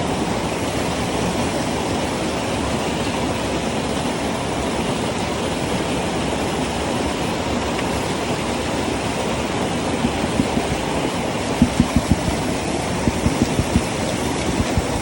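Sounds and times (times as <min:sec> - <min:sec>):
waterfall rushing: 0:08.2 - 0:15.0
light knocks: 0:11.6 - 0:15.0.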